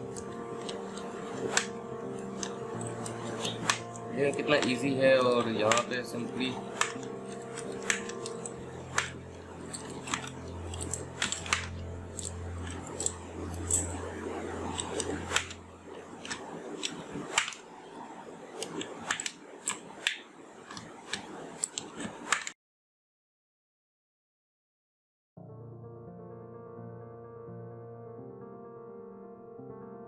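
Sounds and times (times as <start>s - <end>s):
low steady hum: 0.0s - 19.0s
keycaps pulled off keyboard: 0.1s - 17.6s.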